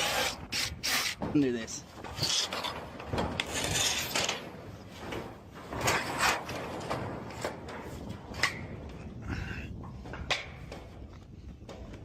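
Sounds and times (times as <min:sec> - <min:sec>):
roofing material scraping: 0:00.0 - 0:08.9.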